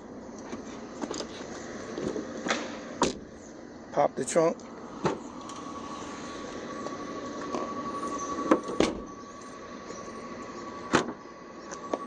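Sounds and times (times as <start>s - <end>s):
faint high hum: 0.0s - 12.0s
car trunk latch clicks: 3.0s - 3.2s.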